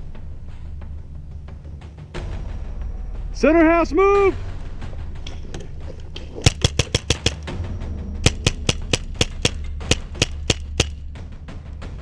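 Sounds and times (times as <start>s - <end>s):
paintball markers firing: 6.4s - 7.5s, 8.2s - 11.0s.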